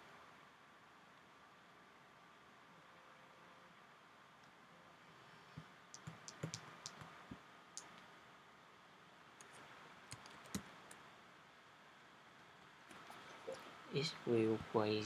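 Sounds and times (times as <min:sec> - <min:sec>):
computer keys clicking: 0:05.9 - 0:07.2, 0:09.4 - 0:11.0.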